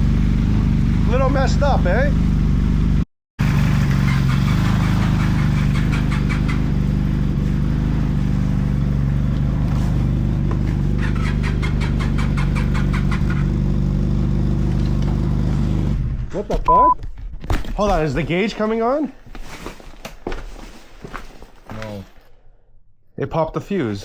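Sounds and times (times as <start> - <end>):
snowmobile engine idling: 0.0 - 16.1
rapid even ticking: 4.1 - 7.1, 10.9 - 13.7.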